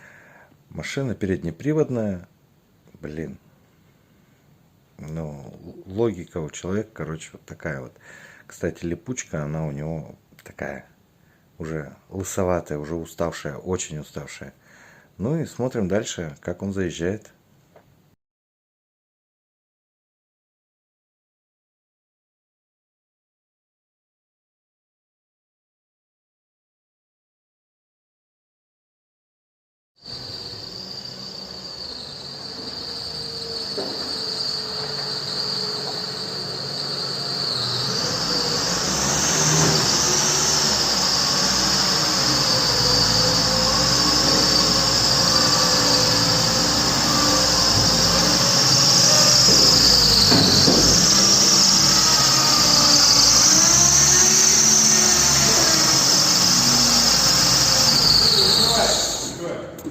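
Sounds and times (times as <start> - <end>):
high whistle from belt drive: 30.0 - 59.4.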